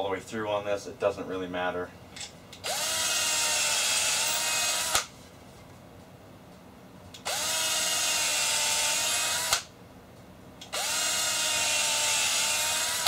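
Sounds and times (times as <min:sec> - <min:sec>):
electric drill whining: 0:02.6 - 0:05.1, 0:07.2 - 0:09.7, 0:10.7 - 0:13.0.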